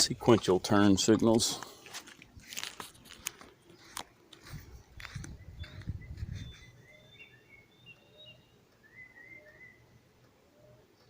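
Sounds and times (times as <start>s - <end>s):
songbirds chirping: 0.0s - 11.0s
low rumble: 4.5s - 6.6s.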